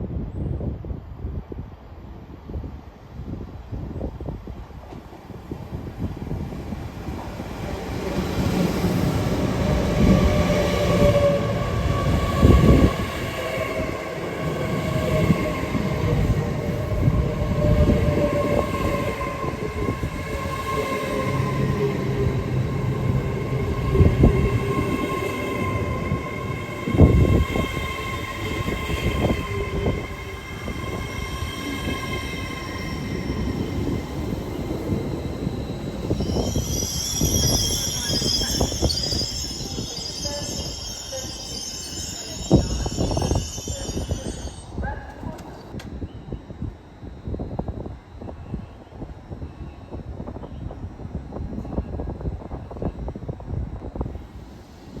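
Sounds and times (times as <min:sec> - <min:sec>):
train whining: 0:04.9 - 0:46.1
train clunks: 0:34.9 - 0:46.0.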